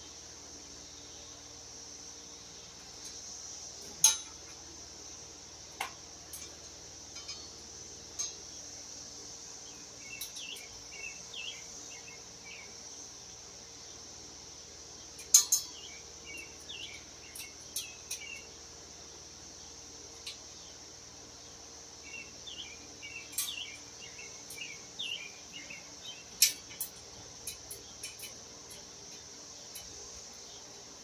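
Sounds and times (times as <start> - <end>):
high insect drone: 0.0 - 31.0
metallic clinks of tools: 3.9 - 4.5, 26.3 - 30.0
bird chirps: 22.0 - 26.5.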